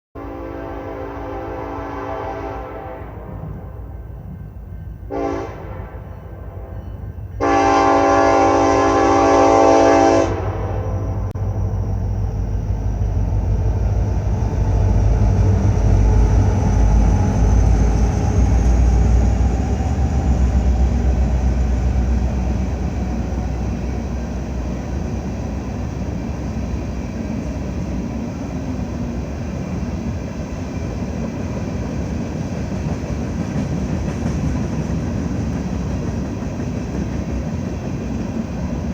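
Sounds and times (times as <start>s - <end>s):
locomotive air horn blasts: 0.2s - 3.8s, 5.1s - 6.8s, 7.4s - 11.2s
diesel locomotives rumbling past: 0.2s - 38.9s
train cars running on rails: 0.2s - 38.9s.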